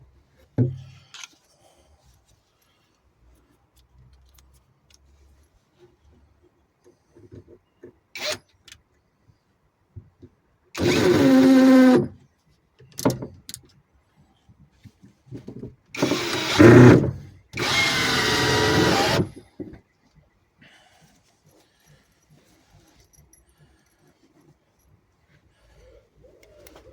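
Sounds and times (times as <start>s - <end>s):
power drill whining: 10.8s - 12.1s, 16.0s - 19.4s.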